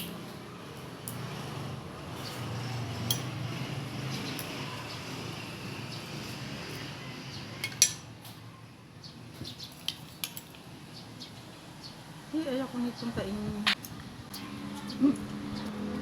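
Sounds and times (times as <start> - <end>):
cutlery clinking on plate: 7.6 - 8.2.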